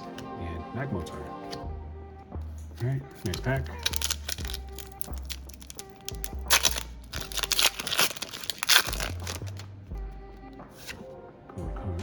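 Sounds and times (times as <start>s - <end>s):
foil wrapper tearing and crinkling: 3.2s - 9.7s.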